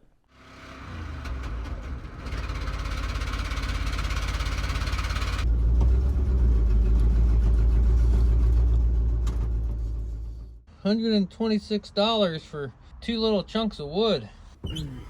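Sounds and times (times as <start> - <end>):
vehicle engine rumbling: 0.4 - 10.8.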